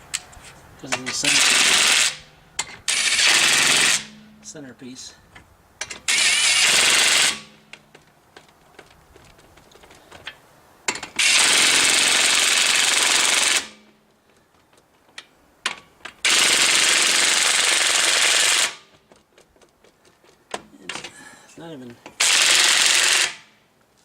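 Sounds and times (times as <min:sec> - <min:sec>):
impact wrench hammering: 0:01.0 - 0:04.3, 0:15.7 - 0:18.8.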